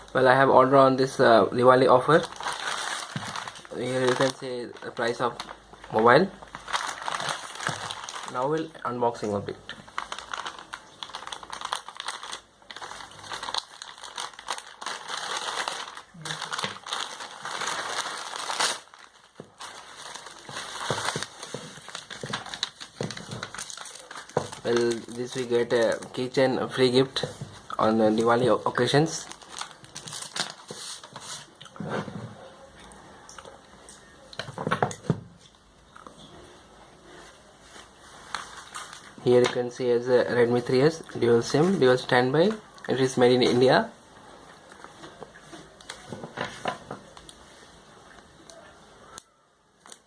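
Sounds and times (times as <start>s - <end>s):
plastic and cardboard crinkling: 1.6s - 32.4s, 37.1s - 43.9s, 44.6s - 48.6s
packaging clicks and rustles: 2.1s - 8.7s, 9.7s - 26.4s, 28.1s - 31.5s.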